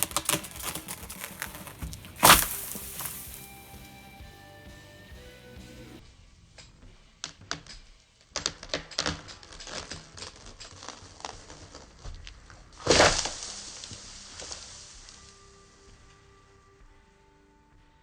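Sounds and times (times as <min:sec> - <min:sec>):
wood snapping and cracking: 0:00.0 - 0:04.0, 0:07.5 - 0:14.8
tree crashing onto branches: 0:00.0 - 0:04.2, 0:12.8 - 0:15.1
branches rustling: 0:00.0 - 0:04.8, 0:09.7 - 0:15.8.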